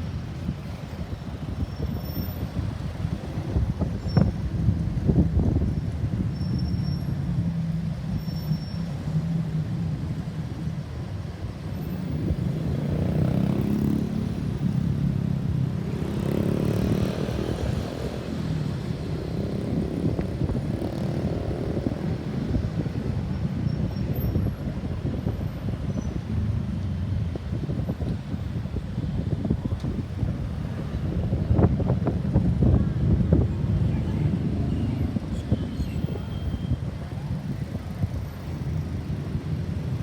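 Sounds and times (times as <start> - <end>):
road traffic passing: 0.0 - 40.0.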